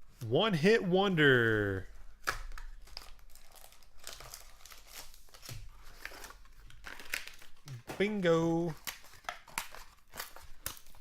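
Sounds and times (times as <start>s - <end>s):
plastic wrapping crinkling and tearing: 2.0s - 11.0s.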